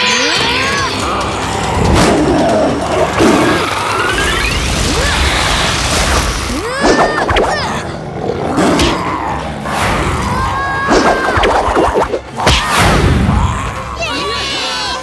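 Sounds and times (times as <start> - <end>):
gliding whooshes and zaps: 5.9 - 7.8, 9.6 - 13.2
sharp crashes: 9.7 - 13.6.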